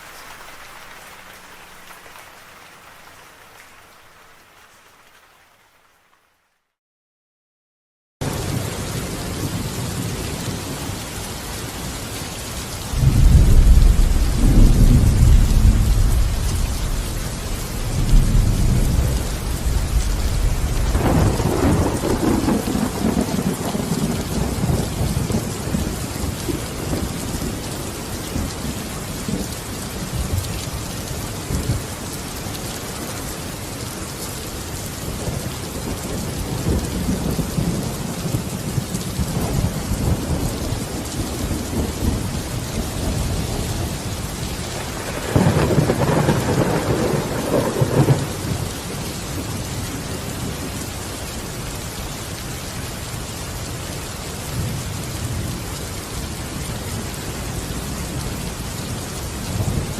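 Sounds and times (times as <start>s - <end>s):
heavy rain: 0.0s - 6.7s, 8.2s - 59.9s
thunder rumbling: 12.9s - 30.5s, 35.2s - 50.8s
sharp thunder crack: 13.0s - 24.1s.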